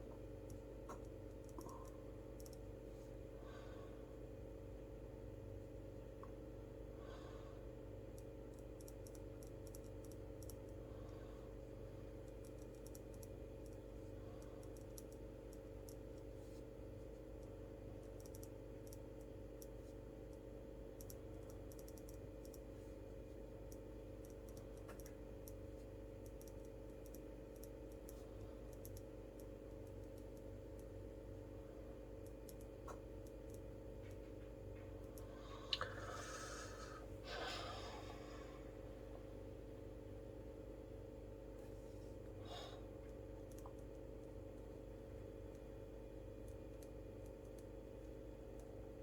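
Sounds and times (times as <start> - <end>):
electrical hum: 0.0 - 49.0
faint small clicks: 0.5 - 2.6, 8.2 - 10.8, 12.2 - 13.8, 14.4 - 16.3, 17.4 - 20.4, 21.0 - 22.7, 23.7 - 25.6, 26.2 - 31.0, 32.2 - 35.9, 43.1 - 44.6, 46.4 - 48.8.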